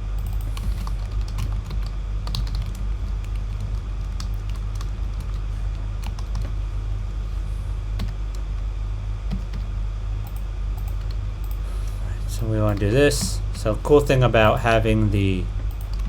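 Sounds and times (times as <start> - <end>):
steady low hum: 0.0 - 16.0
keyboard keystrokes: 0.2 - 6.6, 9.3 - 11.6, 15.7 - 16.0.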